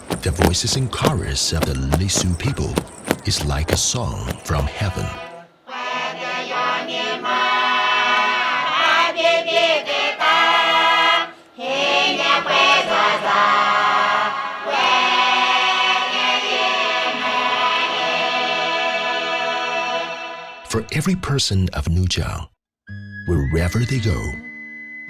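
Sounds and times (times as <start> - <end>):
choir singing in harmony: 4.9 - 20.6.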